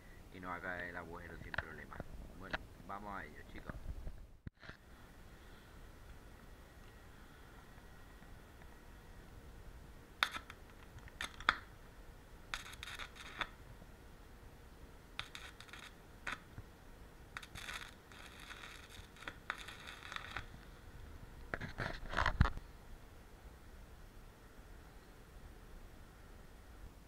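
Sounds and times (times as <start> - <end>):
welding arc crackling and hissing: 10.2 - 11.7, 12.5 - 13.6, 15.2 - 16.6, 17.3 - 20.7.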